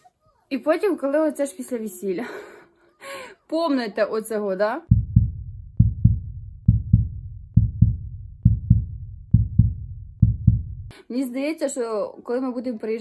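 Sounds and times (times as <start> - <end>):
heartbeat thumps: 4.9 - 10.9.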